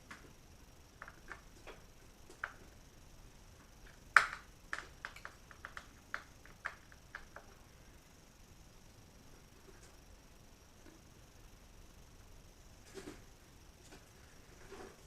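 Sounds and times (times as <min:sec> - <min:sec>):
small parts and tools clicking: 0:03.8 - 0:07.6.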